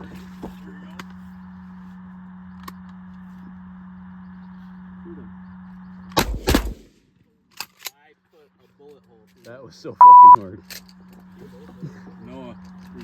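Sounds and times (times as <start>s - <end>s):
shotgun shots: 6.2s - 6.9s.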